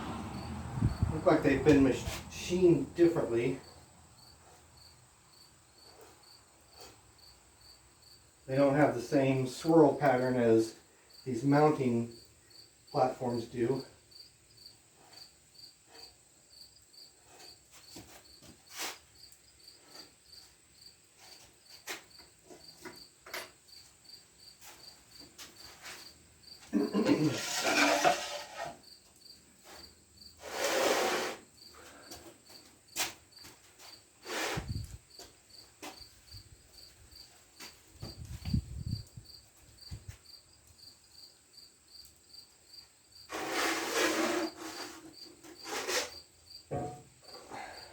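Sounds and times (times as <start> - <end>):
cricket chirping: 3.6 - 8.4, 34.7 - 43.4
handling scrapes: 17.3 - 19.0, 26.8 - 28.8, 30.4 - 31.9, 34.2 - 34.9, 43.3 - 46.2.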